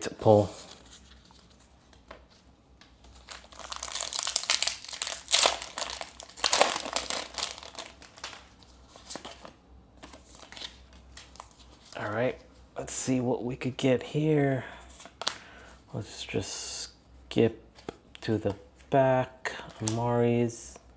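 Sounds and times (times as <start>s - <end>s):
foil wrapper crinkling: 3.0s - 11.6s.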